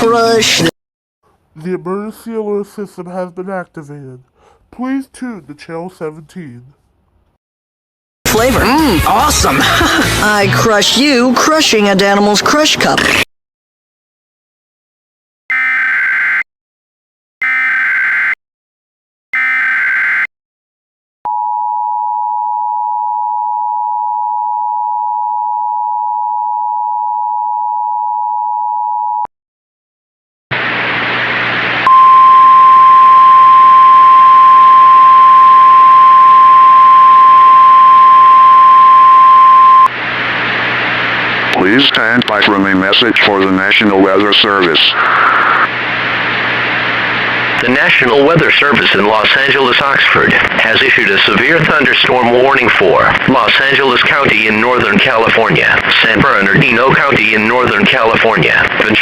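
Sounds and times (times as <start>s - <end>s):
two-tone alert signal: 15.5s - 16.4s, 17.4s - 18.4s, 19.4s - 20.3s
screeching data bursts: 17.4s - 18.4s, 19.4s - 20.3s
loud static hiss: 30.5s - 31.8s, 39.9s - 59.0s.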